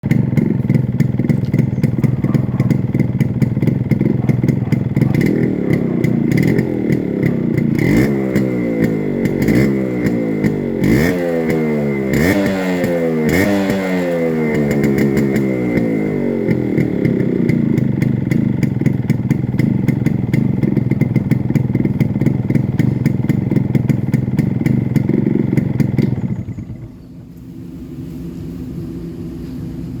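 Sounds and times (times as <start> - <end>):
motorcycle engine idling and revving: 0.0 - 30.0.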